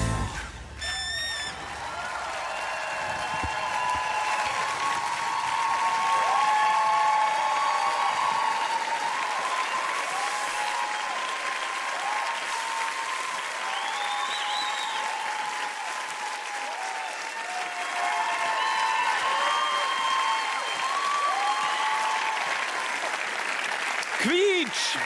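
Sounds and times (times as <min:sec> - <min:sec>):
people cheering and whooping: 0:00.0 - 0:23.2
audience applauding: 0:00.0 - 0:25.0.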